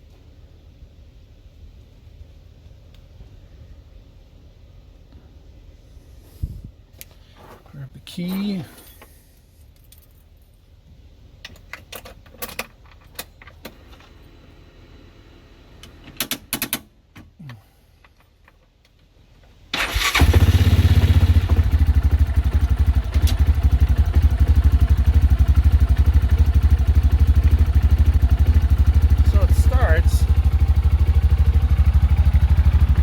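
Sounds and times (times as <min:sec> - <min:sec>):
engine cranking and running: 0:19.8 - 0:33.0.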